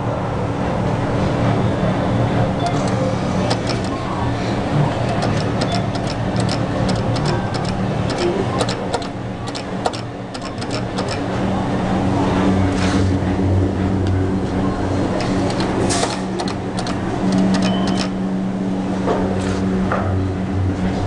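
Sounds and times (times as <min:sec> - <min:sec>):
claw machine motor hum: 0:02.0 - 0:18.8
quick clicks: 0:02.6 - 0:04.2, 0:04.9 - 0:11.3, 0:15.1 - 0:18.2.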